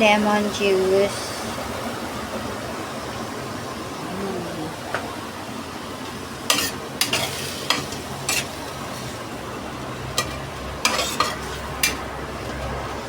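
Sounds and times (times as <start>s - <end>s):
food sizzling in frying pan: 5.4s - 13.0s
utensil scraping and knocking pan: 6.5s - 9.1s, 10.2s - 12.0s.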